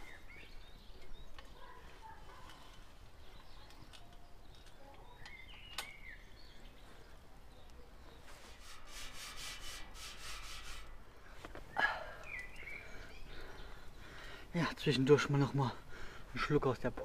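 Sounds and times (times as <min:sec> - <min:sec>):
bird chirping: 0:00.0 - 0:08.8, 0:11.6 - 0:15.5
faint outdoor ambience: 0:00.0 - 0:17.0
rustling noise: 0:08.0 - 0:11.7.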